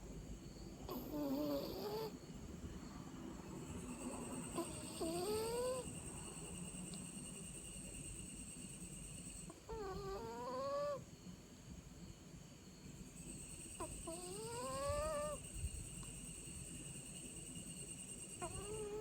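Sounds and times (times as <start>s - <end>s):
squeaky snoring: 0.9s - 2.2s, 4.4s - 6.0s, 9.7s - 11.0s, 13.8s - 15.4s, 18.3s - 19.0s.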